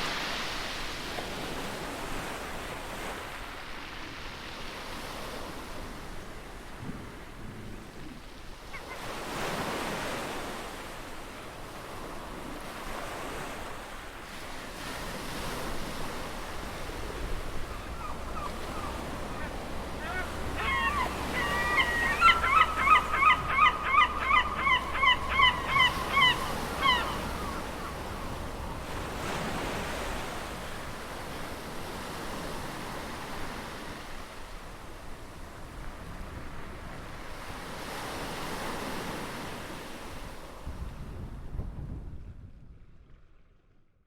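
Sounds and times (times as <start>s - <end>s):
ocean surf rushing: 8.8s - 34.0s
bird honking calls: 17.2s - 28.6s.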